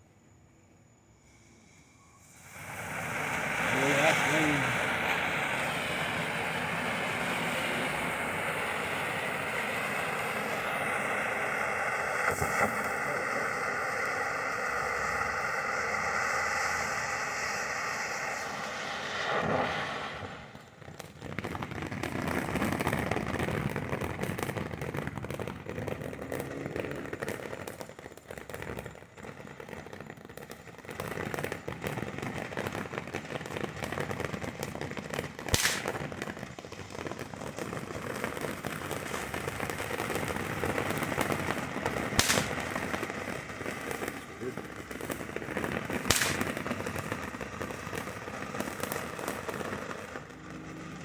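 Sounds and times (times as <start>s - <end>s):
whistle-like firework sound: 0.0s - 51.0s
firework fountain crackling: 0.9s - 51.0s
sharp loud cracks: 35.3s - 38.1s, 39.0s - 48.1s.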